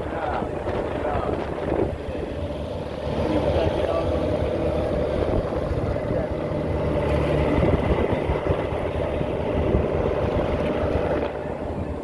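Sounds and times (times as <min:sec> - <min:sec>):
boat engine running: 0:00.0 - 0:12.0.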